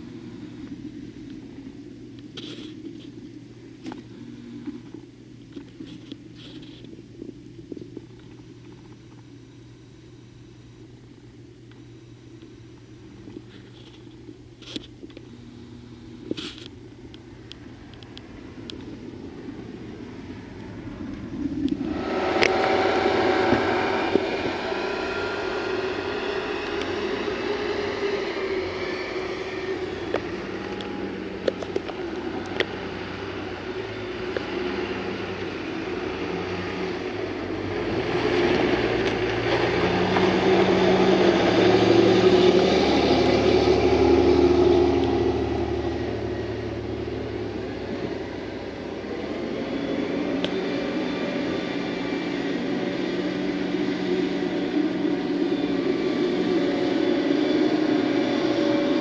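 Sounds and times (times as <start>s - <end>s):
outdoor rumble: 0.0s - 59.0s
motor vehicle passing: 19.2s - 59.0s.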